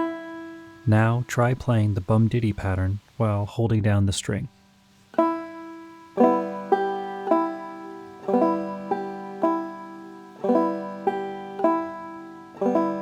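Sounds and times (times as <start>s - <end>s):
banjo clawhammer strumming: 0.0s - 2.5s, 5.2s - 13.0s.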